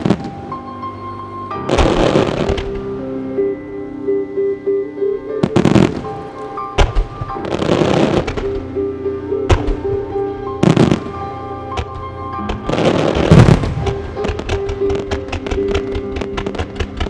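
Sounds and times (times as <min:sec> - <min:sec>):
recorded music with held chords: 0:00.0 - 0:17.0
firework crackle: 0:01.6 - 0:02.9, 0:05.4 - 0:08.7, 0:09.5 - 0:17.0
firework shells bursting: 0:11.8 - 0:17.0.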